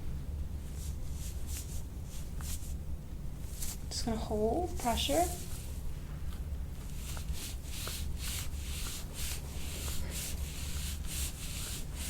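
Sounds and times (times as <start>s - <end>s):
steady low hum: 0.0s - 12.0s
hands rubbing skin: 0.8s - 2.8s, 3.4s - 3.8s, 5.1s - 12.0s.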